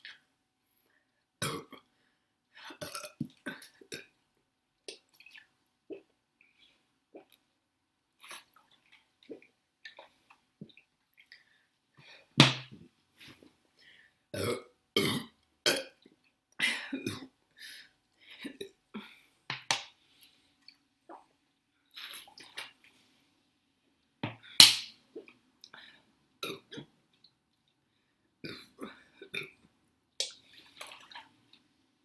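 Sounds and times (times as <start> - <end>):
woman burping: 14.4 - 16.0.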